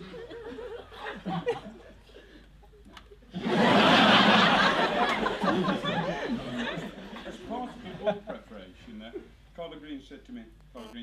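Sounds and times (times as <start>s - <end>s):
audience laughing: 3.4s - 8.2s.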